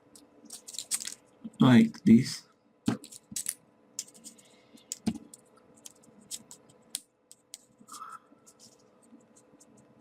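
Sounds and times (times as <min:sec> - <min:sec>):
paper clicks and crinkles: 0:00.5 - 0:01.2, 0:03.0 - 0:07.4.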